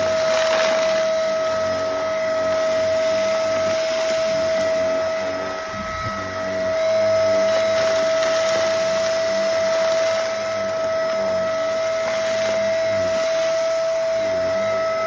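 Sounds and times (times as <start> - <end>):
vacuum cleaner motor whine: 0.0 - 15.0.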